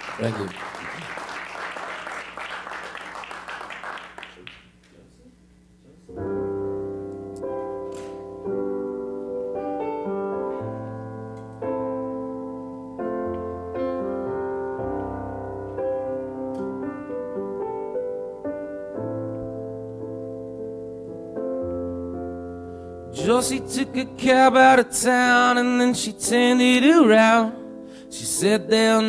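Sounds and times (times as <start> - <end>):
piano chords: 6.1 - 29.0.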